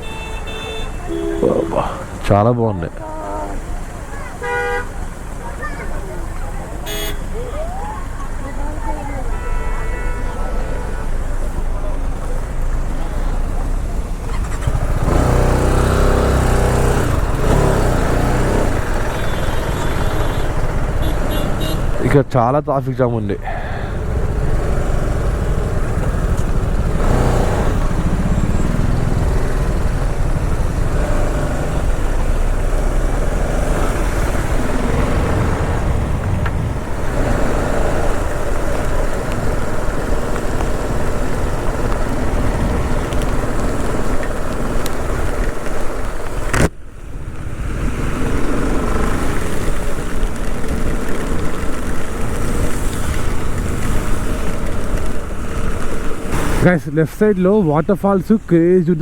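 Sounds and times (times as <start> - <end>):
surrounding traffic: 0.0 - 59.0
wind and road noise: 0.0 - 59.0
motorcycle engine running: 11.4 - 22.0, 23.8 - 46.5.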